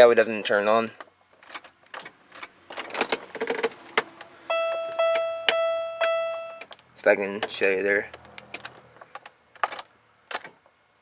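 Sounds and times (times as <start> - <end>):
dashboard warning chime: 4.5 - 6.6.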